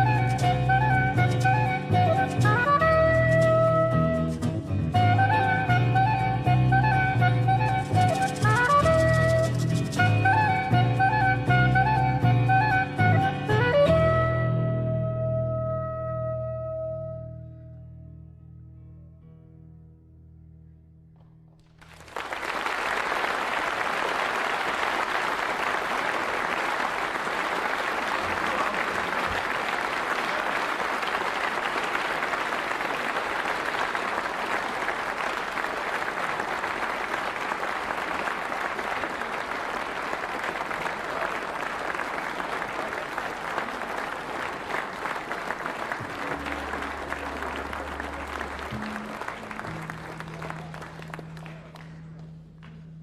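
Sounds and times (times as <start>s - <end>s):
audience applause: 21.6s - 52.8s.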